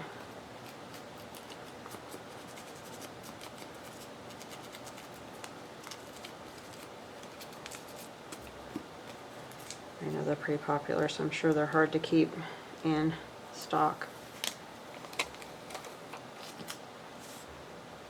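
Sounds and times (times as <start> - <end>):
paper rustling: 0.2 - 9.8, 14.2 - 17.5.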